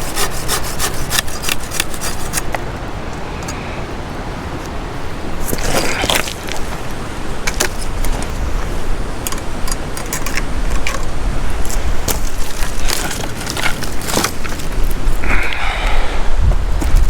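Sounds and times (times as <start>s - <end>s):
sticks and stones clattering: 0.0s - 2.8s, 5.4s - 15.7s.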